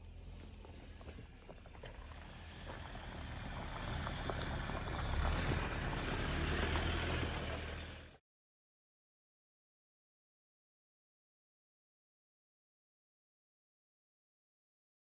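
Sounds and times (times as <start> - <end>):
tyre and road noise: 0.0 - 8.2.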